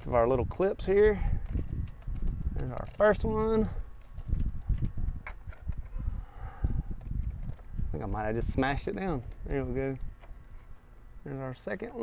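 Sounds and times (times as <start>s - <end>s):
light knocks and bumps: 0.0s - 6.0s.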